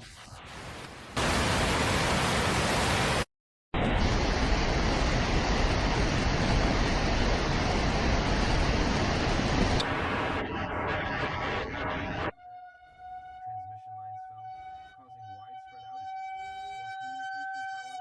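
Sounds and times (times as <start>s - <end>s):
heavy rain and floodwater rushing: 0.4s - 10.4s.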